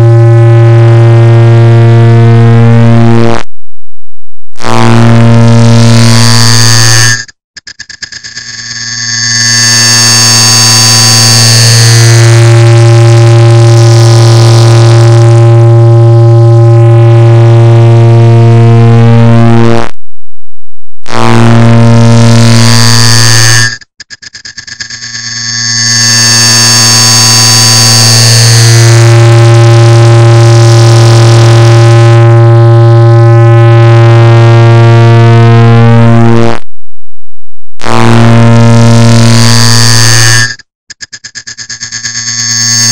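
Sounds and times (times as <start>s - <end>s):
rattle of ticks: 7.6s - 9.1s, 23.8s - 25.5s, 40.9s - 42.2s
sped-up clock ticking drone: 40.9s - 42.9s.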